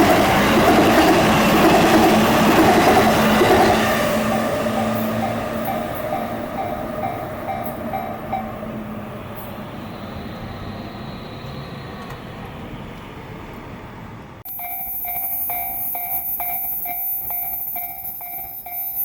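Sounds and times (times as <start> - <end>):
crossing warning bell dinging: 0.0 - 12.2, 14.5 - 19.0
train wheels rumbling on rail: 0.0 - 14.4.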